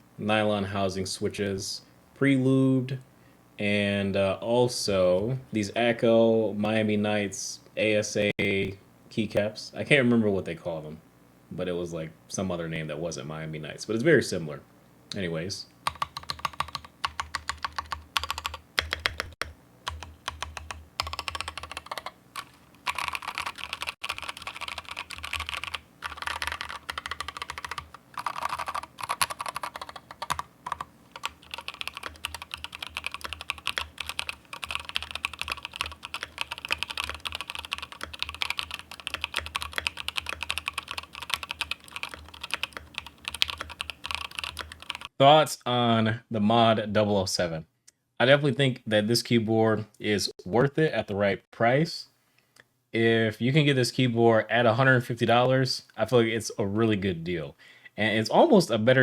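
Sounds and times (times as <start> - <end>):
mechanical keyboard typing: 15.9 - 45.1.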